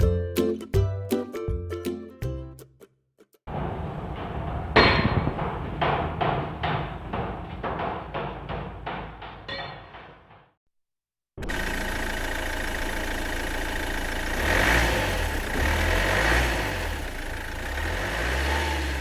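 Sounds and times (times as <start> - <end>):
car engine running: 11.4 - 19.0.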